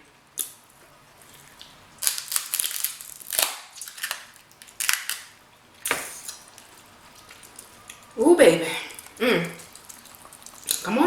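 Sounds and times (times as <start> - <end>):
crab shells cracking: 1.6 - 7.7, 9.0 - 10.9.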